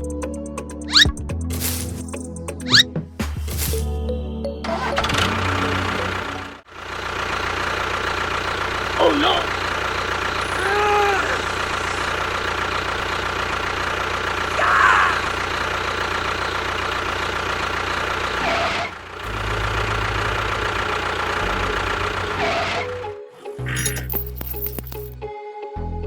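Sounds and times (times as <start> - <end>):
small motor running: 9.6 - 14.4.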